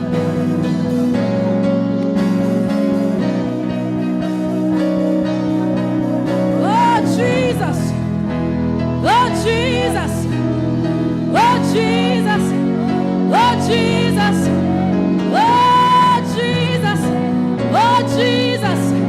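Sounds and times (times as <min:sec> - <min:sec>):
sustained keyboard chords: 0:00.0 - 0:19.0
woman singing with vibrato: 0:06.6 - 0:08.0, 0:09.0 - 0:10.4, 0:11.3 - 0:19.0.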